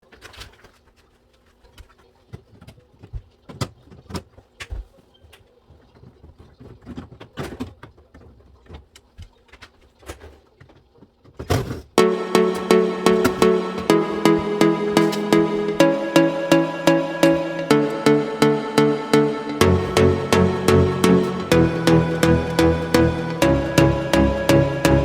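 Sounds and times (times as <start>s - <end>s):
electronic music with beat: 12.0s - 25.0s.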